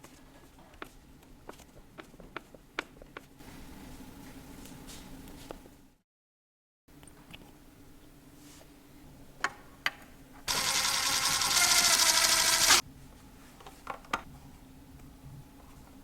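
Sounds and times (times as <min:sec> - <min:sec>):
small power tool whirring: 0:10.5 - 0:12.8.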